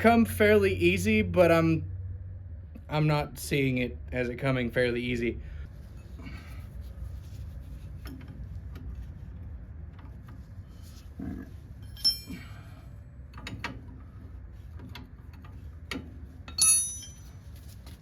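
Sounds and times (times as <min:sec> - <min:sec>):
metal hand tools clinking: 0:11.8 - 0:12.6, 0:16.6 - 0:17.4.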